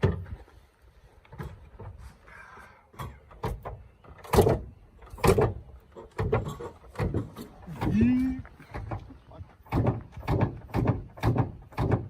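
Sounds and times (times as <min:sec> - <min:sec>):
sharp clunks and bangs: 0:02.9 - 0:12.0.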